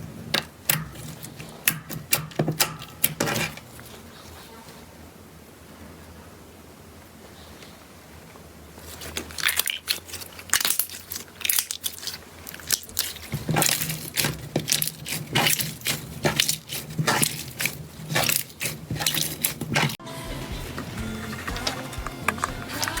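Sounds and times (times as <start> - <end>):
slime popping and squelching: 9.0 - 20.0.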